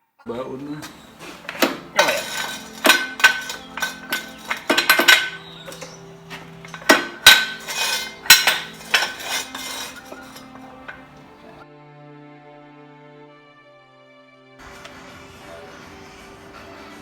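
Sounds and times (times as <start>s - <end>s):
metal tools clinking: 0.8s - 11.6s.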